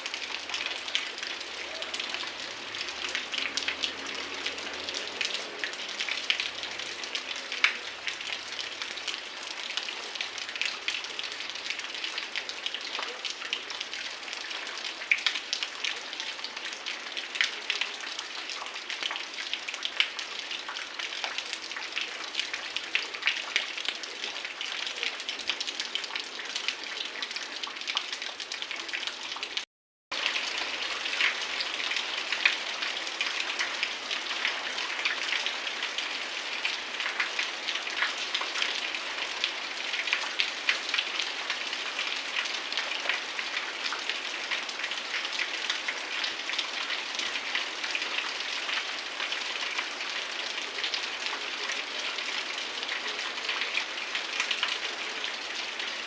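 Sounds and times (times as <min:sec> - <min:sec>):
heavy rain falling: 0:00.0 - 0:12.2, 0:30.2 - 0:56.0.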